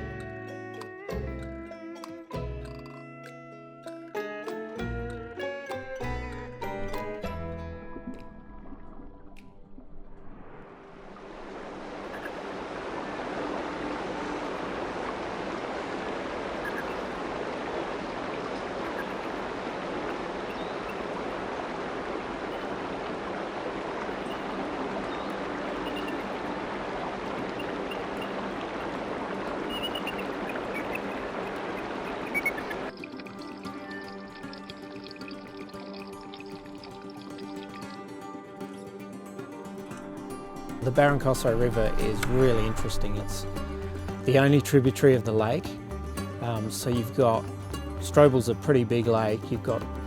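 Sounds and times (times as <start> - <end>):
river rushing over rocks: 10.9 - 33.7.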